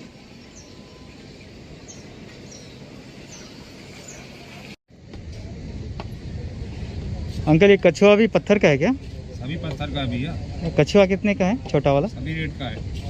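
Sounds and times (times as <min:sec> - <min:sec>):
high bird chirps: 0:00.0 - 0:04.3
outdoor background noise: 0:00.0 - 0:13.0.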